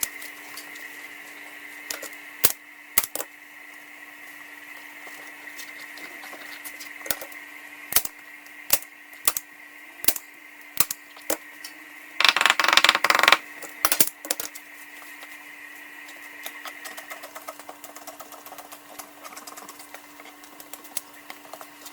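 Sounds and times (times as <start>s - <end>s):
rapid clicking and rustling: 16.7s - 21.9s.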